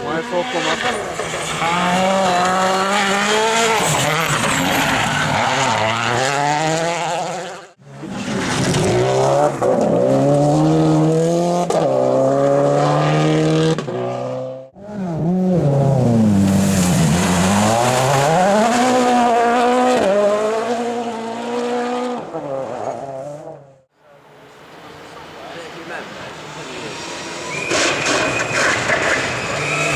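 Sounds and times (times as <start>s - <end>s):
rally car engine accelerating: 0.0s - 23.8s.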